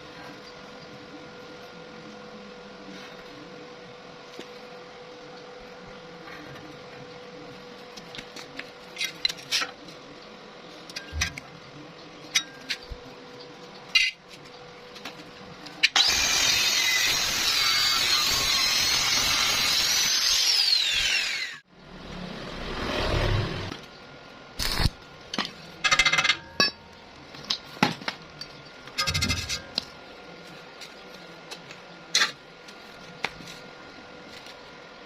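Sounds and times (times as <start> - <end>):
angle grinder whine: 15.9 - 23.7.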